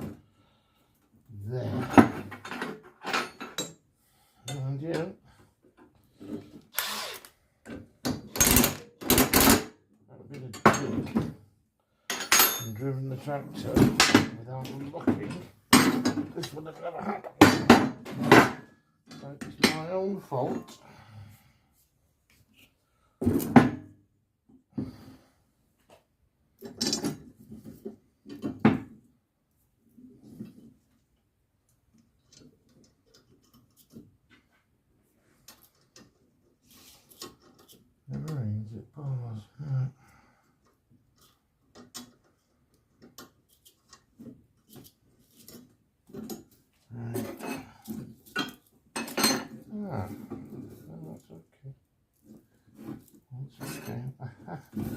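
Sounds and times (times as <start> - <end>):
metal tools clanking: 1.9 - 3.8, 12.1 - 13.0, 53.6 - 54.1
tools and metal parts clinking: 2.0 - 3.8, 8.1 - 9.7, 12.1 - 12.9, 26.6 - 27.3, 41.2 - 49.7, 52.9 - 54.0.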